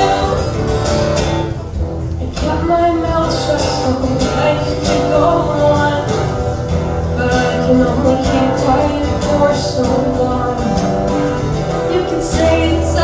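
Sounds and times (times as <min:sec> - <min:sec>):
person singing: 0:00.0 - 0:00.8, 0:02.2 - 0:06.6, 0:07.2 - 0:13.0
guitar accompaniment: 0:00.0 - 0:13.0.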